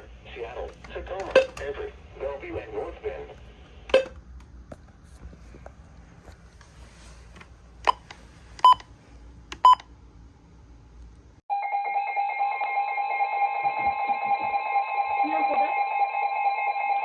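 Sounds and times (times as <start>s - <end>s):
faint hum: 0.0s - 11.4s.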